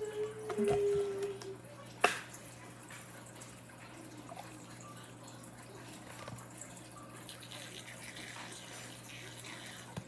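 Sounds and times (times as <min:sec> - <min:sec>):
low steady hum: 0:00.0 - 0:07.4.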